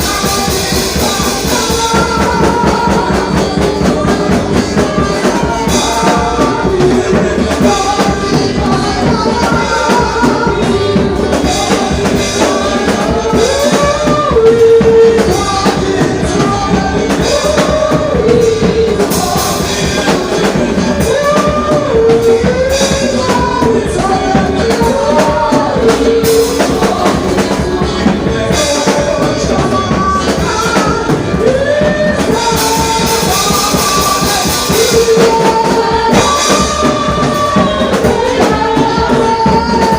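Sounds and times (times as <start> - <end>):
bass: 0.0 - 39.9
drum kit: 0.0 - 39.9
keyboard: 0.0 - 39.9
person singing: 0.0 - 39.9.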